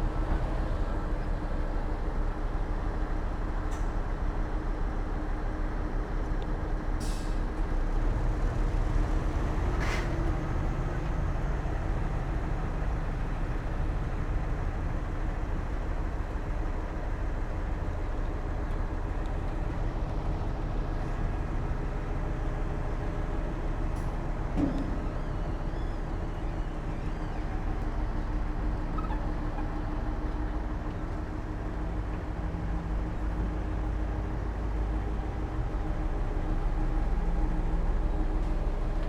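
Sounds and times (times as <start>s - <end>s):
diesel earthmoving machinery rumble: 0.0s - 39.0s.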